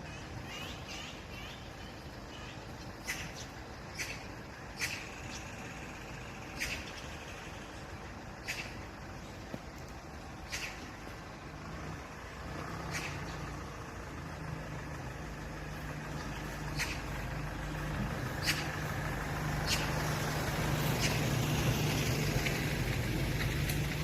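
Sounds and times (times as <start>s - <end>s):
traffic engine rumble: 0.0s - 24.0s
magpie calls: 0.1s - 5.4s, 10.5s - 10.9s, 12.9s - 13.4s, 16.3s - 17.2s.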